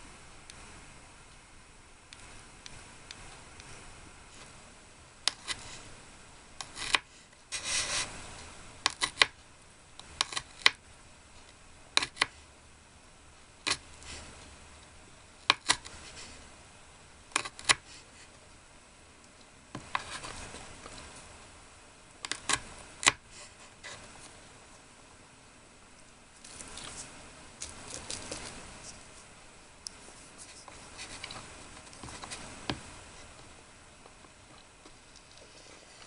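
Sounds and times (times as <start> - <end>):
scraping rustle: 6.7 - 8.2, 26.4 - 29.4, 30.0 - 33.4.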